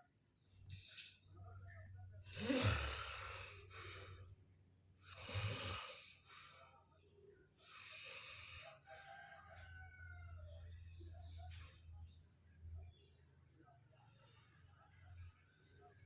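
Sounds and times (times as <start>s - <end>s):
loud snoring: 2.3s - 3.6s, 5.1s - 6.0s.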